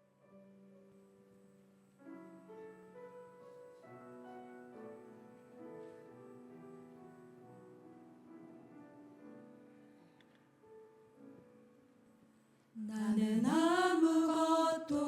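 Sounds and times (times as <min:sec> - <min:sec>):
soft piano melody: 0:00.0 - 0:15.0.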